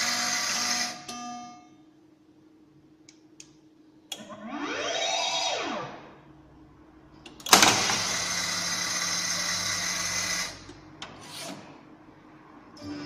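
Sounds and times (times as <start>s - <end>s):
pinball machine noisy sound effect: 4.2s - 6.2s, 7.5s - 10.6s.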